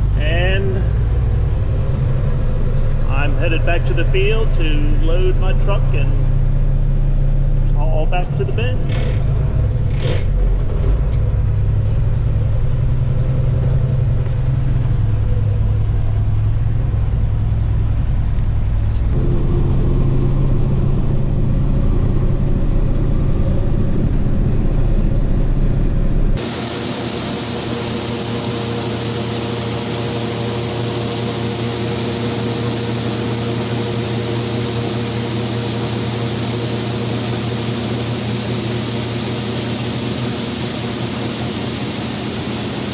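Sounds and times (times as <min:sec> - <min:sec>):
machinery hiss with hum: 0:26.4 - 0:42.9
vehicle engine droning: 0:26.4 - 0:42.9.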